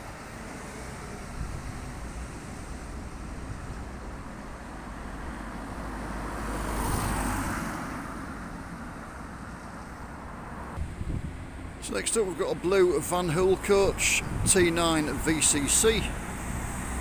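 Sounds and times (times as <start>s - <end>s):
traffic rumble: 0.0s - 17.0s
vehicle passing by: 0.2s - 11.8s, 13.3s - 17.0s.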